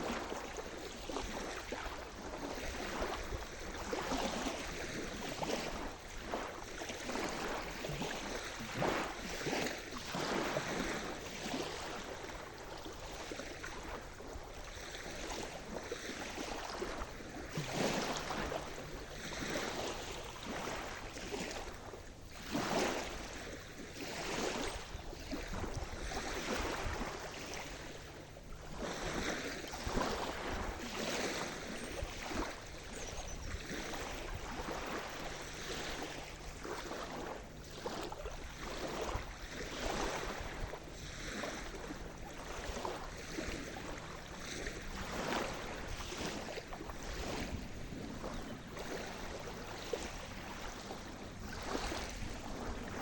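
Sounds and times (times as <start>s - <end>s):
sea waves breaking: 0.0s - 53.0s.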